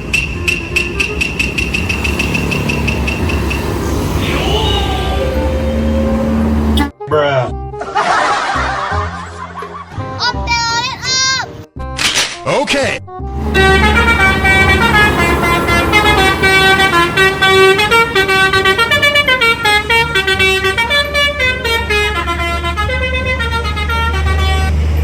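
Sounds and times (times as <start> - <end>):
low engine rumble: 0.0 - 6.9, 13.3 - 25.0
multi-tone bus air horn tune: 0.0 - 6.9, 13.3 - 24.8.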